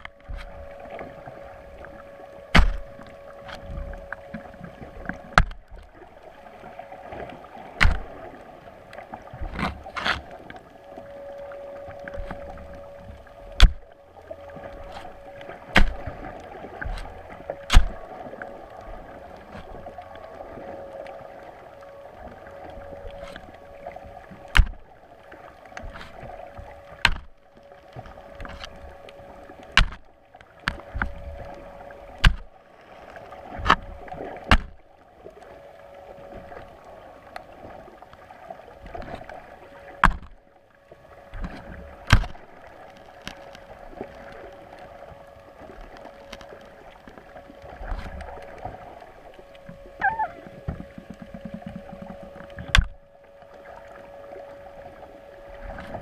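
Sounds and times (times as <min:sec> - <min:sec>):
steady hum and hiss: 0:00.0 - 0:56.0
knocks on a small boat: 0:02.5 - 0:02.8, 0:07.8 - 0:08.0, 0:24.5 - 0:24.8, 0:27.0 - 0:27.3, 0:29.8 - 0:30.0, 0:32.2 - 0:32.5, 0:34.5 - 0:34.8, 0:40.0 - 0:40.4, 0:42.1 - 0:42.4, 0:50.6 - 0:53.0.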